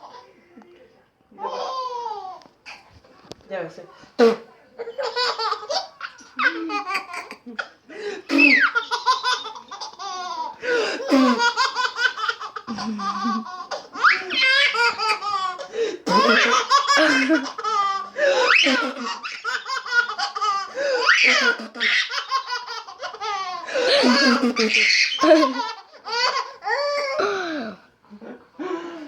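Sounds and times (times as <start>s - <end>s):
child laughing: 8.3s - 27.2s.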